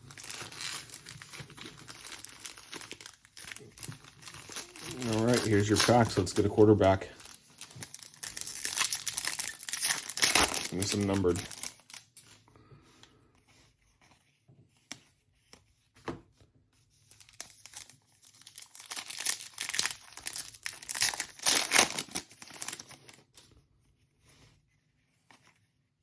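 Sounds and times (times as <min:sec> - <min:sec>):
plastic wrapper crinkling and tearing: 0:00.0 - 0:12.4, 0:17.0 - 0:23.4.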